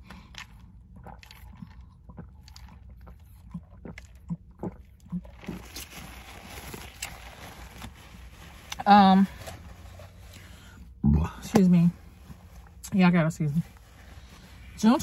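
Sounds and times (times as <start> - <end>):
person eating close to microphone: 0.0 - 11.5.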